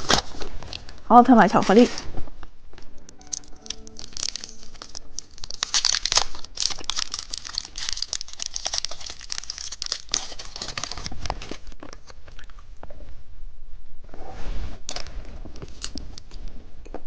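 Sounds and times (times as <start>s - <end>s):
plastic wrapper crumpling: 0.0s - 1.0s, 3.2s - 12.6s.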